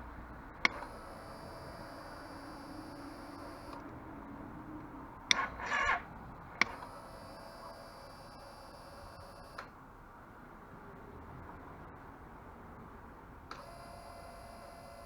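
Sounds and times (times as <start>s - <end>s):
fuel pump whine: 0.0s - 4.2s, 5.0s - 9.6s
starter click and rattling buzz: 0.6s - 4.0s, 5.3s - 9.7s.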